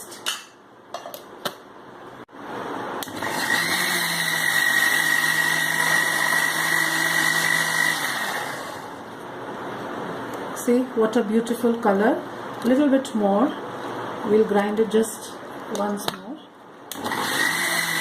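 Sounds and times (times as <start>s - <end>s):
blender motor whining: 3.0s - 9.0s, 16.9s - 18.0s.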